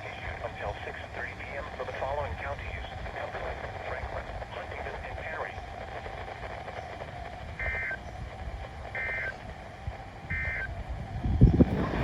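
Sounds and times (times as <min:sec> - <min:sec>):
steady background noise: 0:00.0 - 0:12.0
digital data tone bursts: 0:07.6 - 0:08.0, 0:09.0 - 0:09.4, 0:10.3 - 0:10.7.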